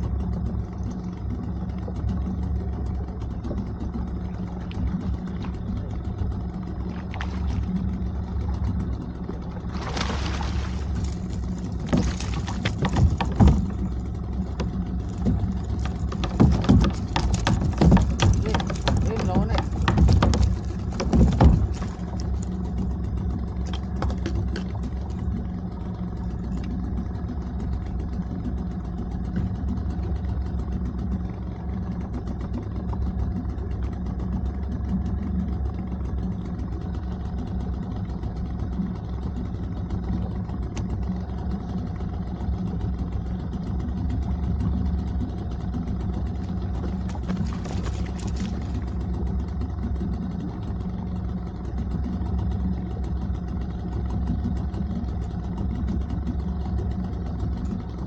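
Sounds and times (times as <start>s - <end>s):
outboard motor running: 0.0s - 58.0s
knocks: 11.8s - 14.0s, 14.6s - 22.1s.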